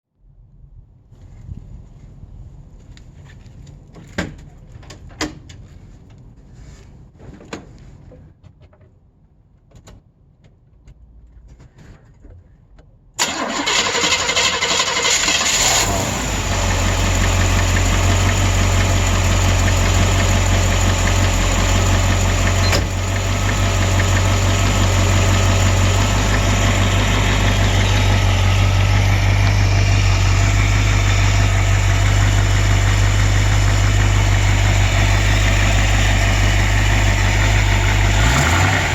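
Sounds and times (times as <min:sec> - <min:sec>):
car engine starting and idling: 0:13.2 - 0:38.9
engine knocking: 0:15.6 - 0:38.9.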